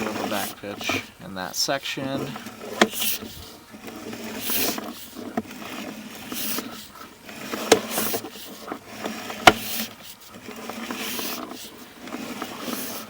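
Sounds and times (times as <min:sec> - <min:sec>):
cable scraping in a drain pipe: 0:00.0 - 0:01.2, 0:02.0 - 0:13.0.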